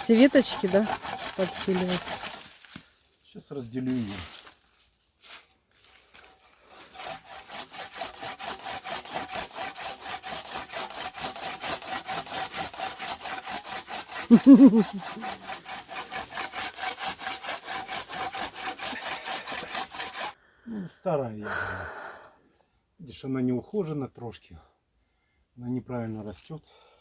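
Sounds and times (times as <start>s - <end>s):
hand saw cutting wood: 0.0s - 2.8s, 5.9s - 20.4s.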